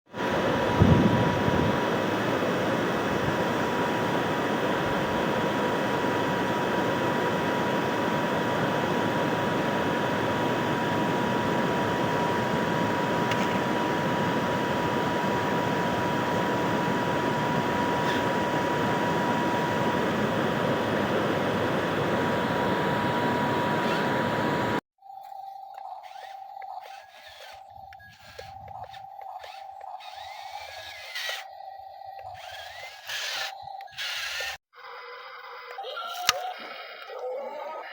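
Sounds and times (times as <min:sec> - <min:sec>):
toy car electric motor whirring: 0:25.7 - 0:37.9.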